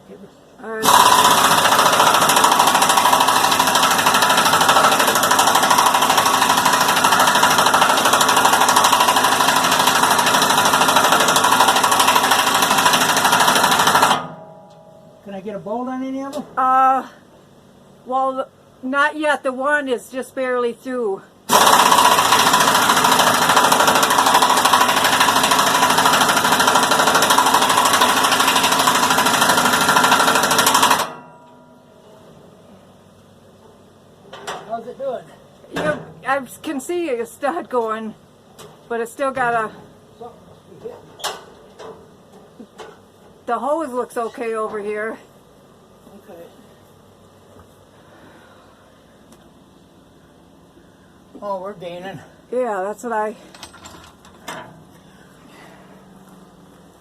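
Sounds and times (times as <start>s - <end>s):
machine running with fast rattling: 0.8s - 14.4s, 21.5s - 31.2s.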